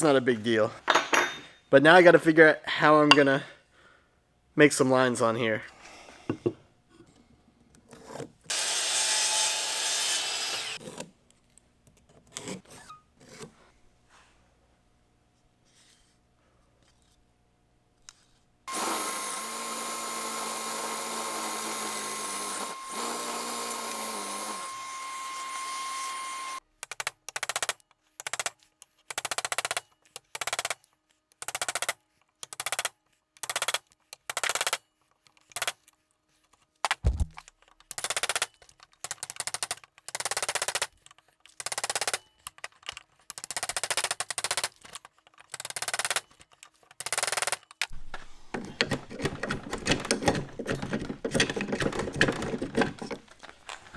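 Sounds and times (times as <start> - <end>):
power tool whining: 8.5 - 10.8, 18.7 - 26.6.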